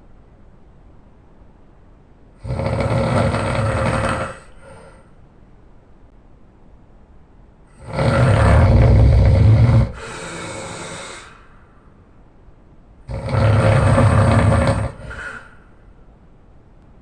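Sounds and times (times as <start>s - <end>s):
man snoring loudly: 2.4s - 4.9s, 7.8s - 11.4s, 13.1s - 15.5s.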